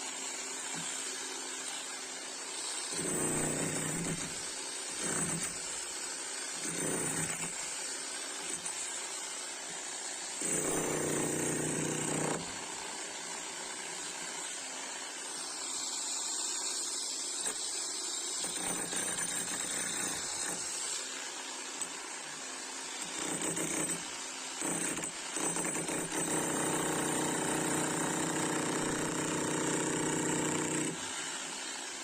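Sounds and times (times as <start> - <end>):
demolition hammer chiselling concrete: 2.5 - 9.0, 10.4 - 13.0, 17.3 - 21.0, 21.6 - 31.9.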